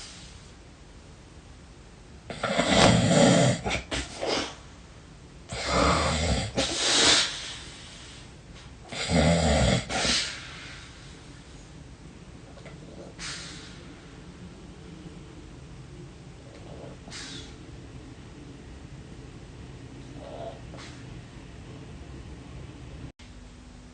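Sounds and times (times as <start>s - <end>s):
person snoring: 2.3s - 3.9s, 5.5s - 7.3s, 8.9s - 11.0s.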